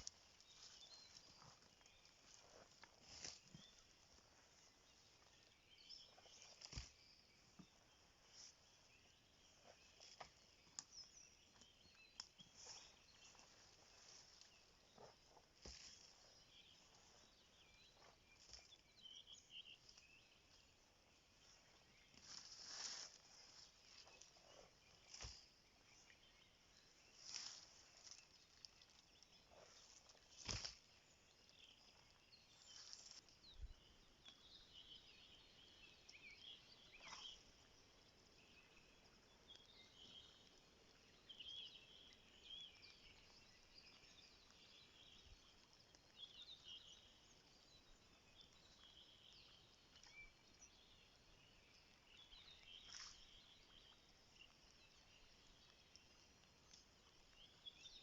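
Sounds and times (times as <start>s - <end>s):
small birds chirping: 0.0s - 58.0s.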